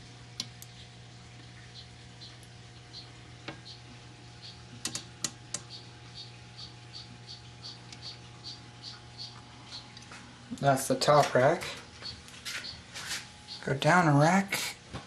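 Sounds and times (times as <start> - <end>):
constant low hum: 0.0 - 15.0
sharp clicks: 4.8 - 5.7
small animal chirping: 5.6 - 10.0, 12.0 - 13.7.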